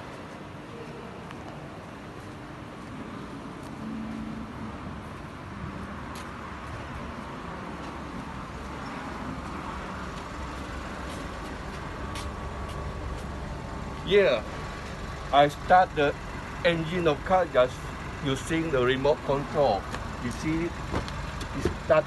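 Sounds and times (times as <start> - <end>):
car engine idling: 8.5 - 22.0.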